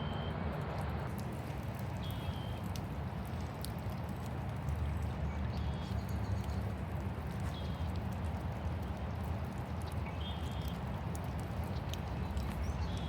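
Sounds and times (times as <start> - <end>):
rain falling: 6.8 - 13.0.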